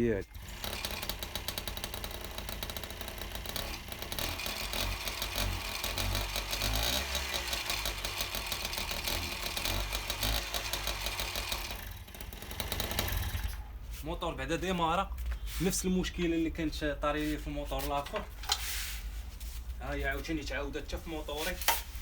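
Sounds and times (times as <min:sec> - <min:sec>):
moped two-stroke engine running: 0:00.2 - 0:13.8.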